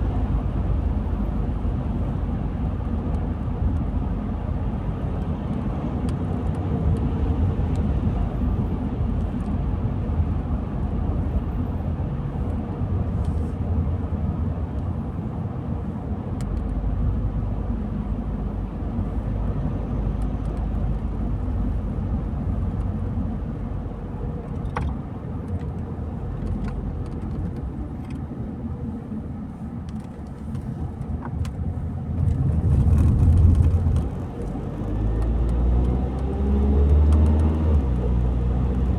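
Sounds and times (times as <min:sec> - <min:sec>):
car driving on road: 0:00.0 - 0:38.9.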